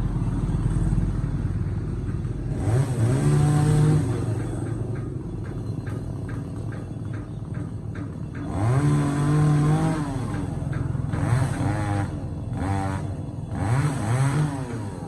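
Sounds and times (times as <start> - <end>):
chainsaw revving: 2.5 - 4.6, 8.4 - 15.0.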